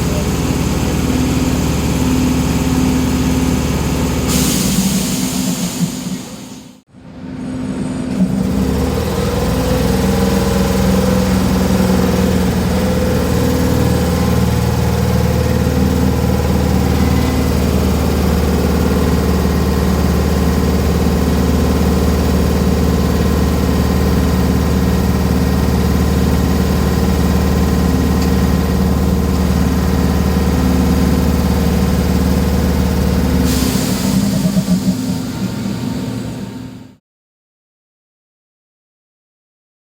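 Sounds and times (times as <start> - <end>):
air compressor running: 0.0 - 6.8, 8.0 - 37.0
idling train hum: 0.0 - 37.0
air hiss: 4.3 - 6.8.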